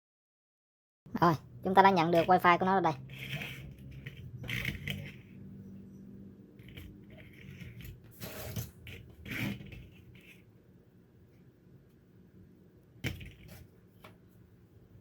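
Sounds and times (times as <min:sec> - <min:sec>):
handling scrapes and rustles: 0:03.0 - 0:06.0, 0:06.6 - 0:10.5.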